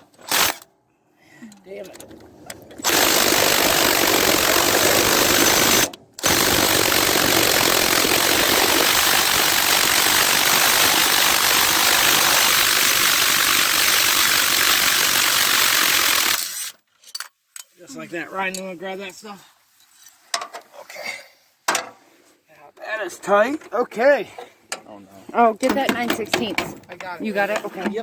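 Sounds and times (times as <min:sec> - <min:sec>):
impact wrench hammering: 0:02.8 - 0:16.6, 0:25.6 - 0:26.9.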